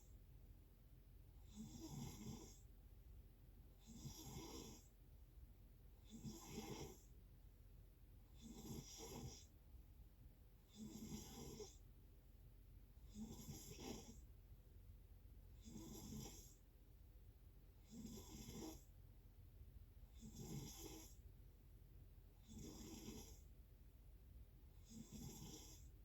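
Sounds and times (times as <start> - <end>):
person snoring faintly: 1.4 - 2.6, 3.8 - 4.9, 6.1 - 7.0, 8.4 - 9.5, 10.7 - 11.8, 15.6 - 16.6, 17.8 - 18.9, 20.2 - 21.2, 22.5 - 23.4, 24.8 - 25.9.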